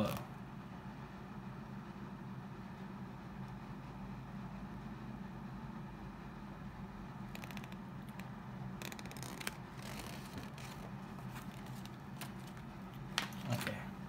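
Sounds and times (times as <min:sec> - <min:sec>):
low steady hum: 0:00.0 - 0:14.0
paper packaging rustling: 0:08.8 - 0:13.8.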